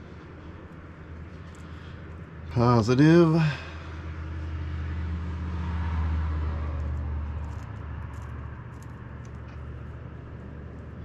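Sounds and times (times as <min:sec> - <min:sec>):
low vehicle-like rumble: 0:00.0 - 0:11.0
small wire clicks: 0:06.7 - 0:11.0.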